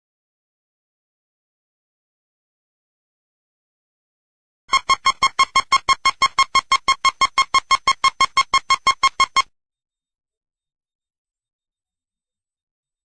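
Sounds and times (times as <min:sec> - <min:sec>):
rapid electronic alert beeps: 0:04.7 - 0:09.5.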